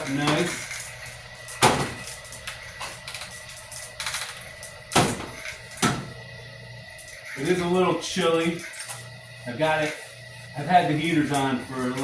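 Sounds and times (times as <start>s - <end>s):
wire stripping machine clicking: 0.0s - 6.3s.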